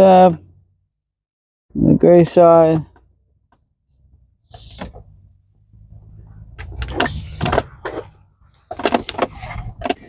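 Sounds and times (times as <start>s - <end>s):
plastic parts clicking and rattling: 6.6s - 10.0s.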